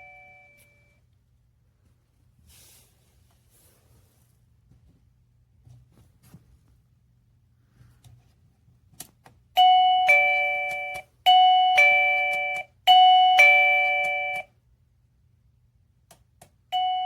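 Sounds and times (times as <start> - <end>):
two-note doorbell chime: 0.0 - 1.0, 9.6 - 14.5, 16.7 - 17.0.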